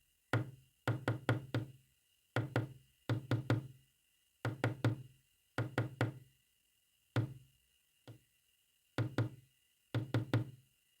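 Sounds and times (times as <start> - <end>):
sharp knocks on hard surface: 0.3 - 1.7, 2.4 - 3.7, 4.4 - 5.0, 9.0 - 9.4, 10.0 - 10.5.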